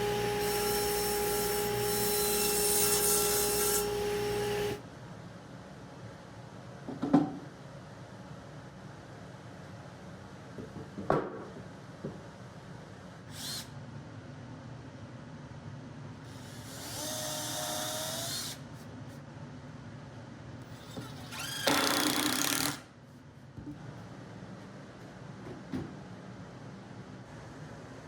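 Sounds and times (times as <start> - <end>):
power drill whining: 0.0 - 4.8, 16.3 - 18.6, 20.7 - 22.8.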